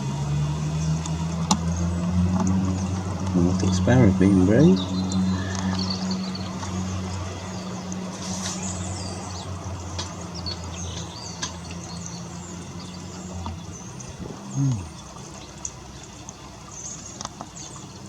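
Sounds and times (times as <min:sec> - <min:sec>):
low engine-like hum: 0:00.0 - 0:18.0
birds chirping and twittering: 0:00.2 - 0:18.0.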